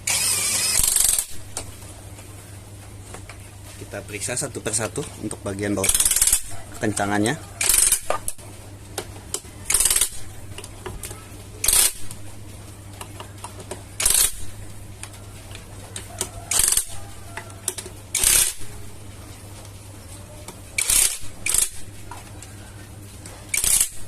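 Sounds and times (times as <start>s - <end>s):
ratchet wrench clicking: 0.0s - 1.4s, 5.8s - 8.4s, 9.7s - 10.2s, 11.6s - 12.1s, 14.0s - 14.5s, 16.5s - 18.6s, 20.8s - 21.9s, 23.5s - 24.0s.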